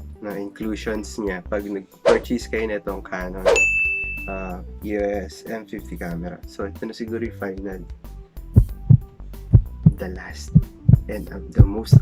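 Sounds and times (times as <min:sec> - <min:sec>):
steady low hum: 0:08.4 - 0:11.2
low heartbeat-like thumps: 0:08.4 - 0:12.0.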